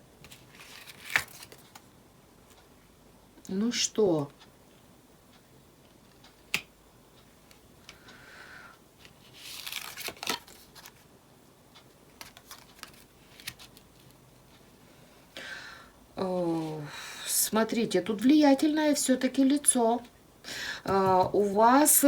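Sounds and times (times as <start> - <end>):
cards snapping: 0.2 - 1.8, 9.4 - 11.0, 12.2 - 14.1
papery rustles: 0.2 - 1.9, 9.2 - 11.0, 12.2 - 14.2.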